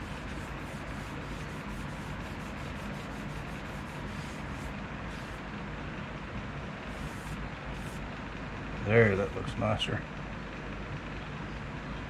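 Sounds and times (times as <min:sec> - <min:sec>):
cloth rubbing on wood: 0:00.0 - 0:05.4, 0:06.9 - 0:08.0
steady background hum: 0:00.0 - 0:12.0.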